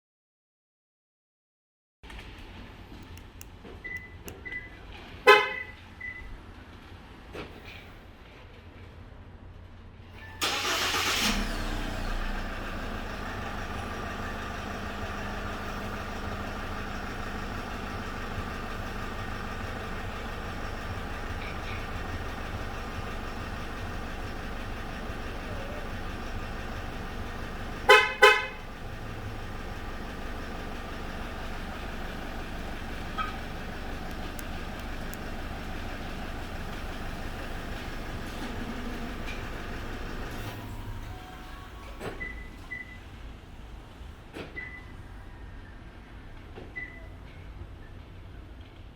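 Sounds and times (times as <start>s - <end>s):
engine cranking and idling: 2.1s - 6.4s, 10.2s - 45.1s
car horn toots: 5.3s - 5.8s, 27.8s - 28.6s.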